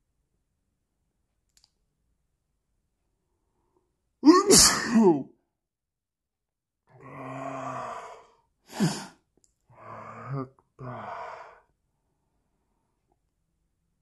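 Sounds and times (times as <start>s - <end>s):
woman sneezing: 4.2s - 5.2s.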